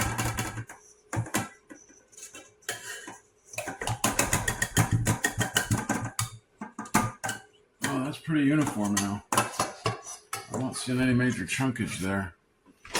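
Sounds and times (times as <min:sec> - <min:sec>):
utensils and dishes clattering: 0:00.0 - 0:12.1
spoon scraping a bowl: 0:00.7 - 0:06.3, 0:08.6 - 0:12.1.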